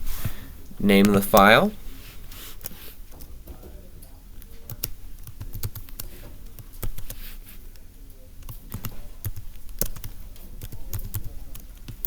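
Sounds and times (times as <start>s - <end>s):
computer keyboard typing: 4.6s - 7.2s, 8.4s - 12.0s.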